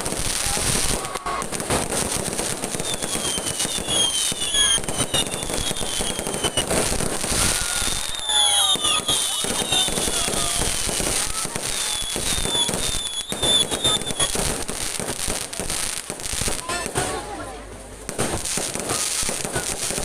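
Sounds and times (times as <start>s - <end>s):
firework whistles gliding downward: 0.0s - 15.6s
fireworks bangs and crackles: 0.0s - 20.0s.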